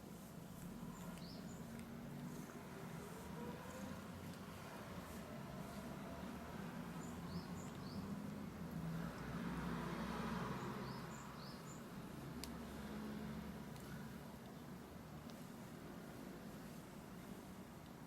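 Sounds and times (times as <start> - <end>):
soft rush of noise: 0.0 - 18.0
small bird chirping: 0.8 - 4.0, 7.0 - 8.2, 10.6 - 11.9.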